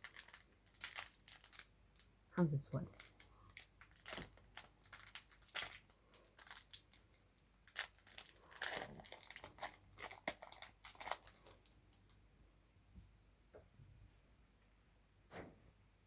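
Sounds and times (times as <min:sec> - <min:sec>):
foil wrapper crinkling and tearing: 0:00.0 - 0:02.1, 0:02.9 - 0:11.7.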